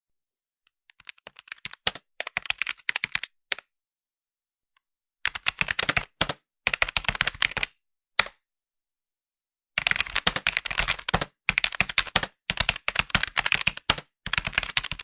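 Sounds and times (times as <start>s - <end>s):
typing on computer keyboard: 0.9s - 3.7s, 5.2s - 8.4s, 9.8s - 15.0s.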